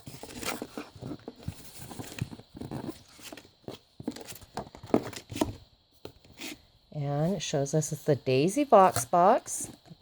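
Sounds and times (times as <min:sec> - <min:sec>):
paper and packaging rustling: 0:00.0 - 0:05.6.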